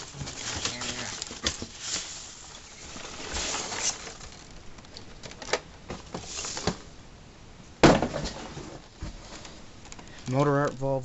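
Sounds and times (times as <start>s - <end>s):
cardboard rustling: 0.0s - 6.9s.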